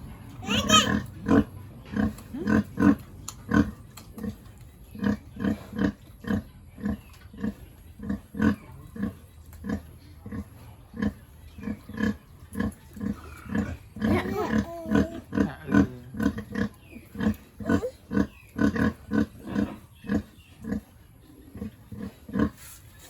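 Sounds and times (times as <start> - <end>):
pigs grunting: 0.0 - 22.8
pigs squealing: 0.4 - 1.5, 11.0 - 20.8.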